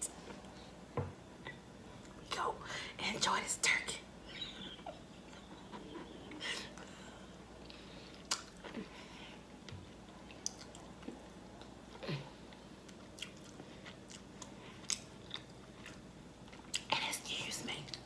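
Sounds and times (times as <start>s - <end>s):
wet mouth clicks and smacks: 8.2s - 8.6s.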